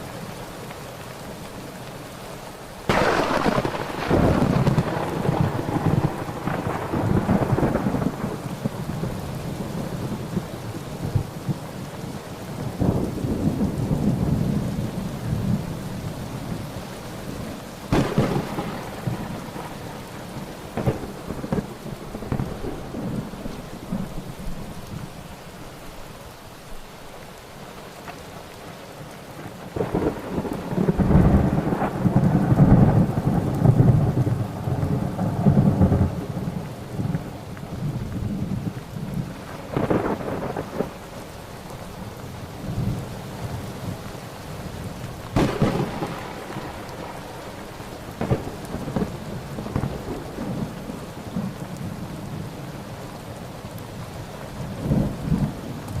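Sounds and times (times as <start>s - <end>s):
steady rain: 0.0s - 56.0s
sharp thunder crack: 2.9s - 8.4s, 17.9s - 19.8s, 20.7s - 23.3s, 45.4s - 50.6s
rolling thunder: 2.9s - 11.6s, 12.6s - 15.7s, 17.9s - 24.8s, 29.7s - 41.0s, 45.3s - 52.0s.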